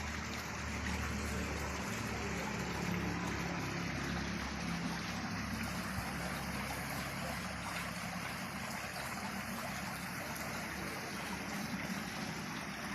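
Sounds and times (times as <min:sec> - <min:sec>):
water pouring down waterfall: 0:00.0 - 0:12.9.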